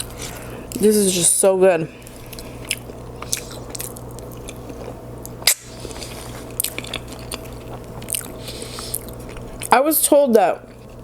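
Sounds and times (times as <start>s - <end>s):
steady low hum: 0.0s - 11.0s
person chewing with lip-smacking: 2.0s - 9.8s.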